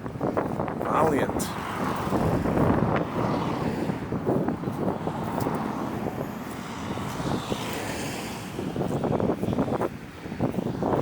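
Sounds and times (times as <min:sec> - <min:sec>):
road traffic passing: 0:00.0 - 0:11.0.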